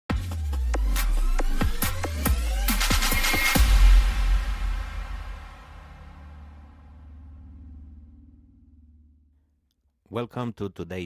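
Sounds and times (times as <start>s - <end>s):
deep sustained bass: 3.6s - 9.4s.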